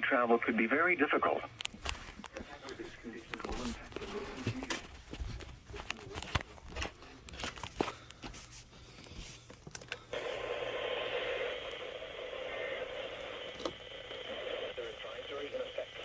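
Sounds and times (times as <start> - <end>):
radio static hiss: 0.0 - 5.0, 10.1 - 16.0
radio static crackles and clicks: 0.0 - 7.8, 10.1 - 16.0.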